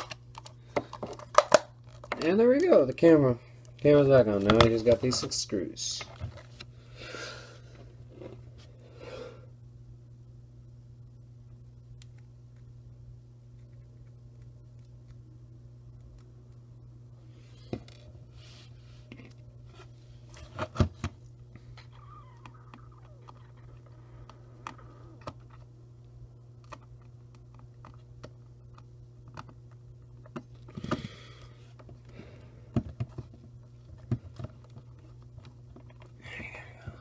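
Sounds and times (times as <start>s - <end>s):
low hum: 21.2s - 32.8s.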